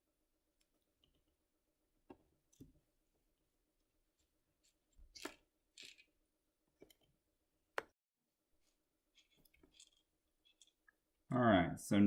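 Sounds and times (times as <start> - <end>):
screwdriver scraping and clicking: 9.1 - 10.8.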